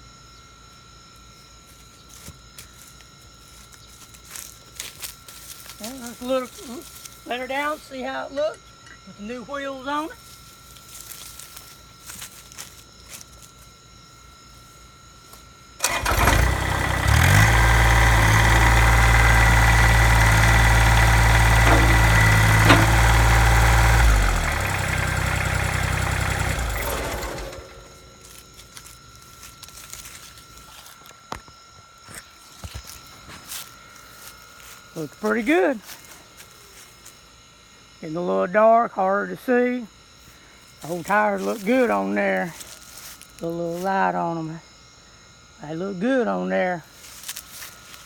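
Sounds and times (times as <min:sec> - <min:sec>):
tractor diesel engine running: 0:15.8 - 0:31.0, 0:40.8 - 0:44.1.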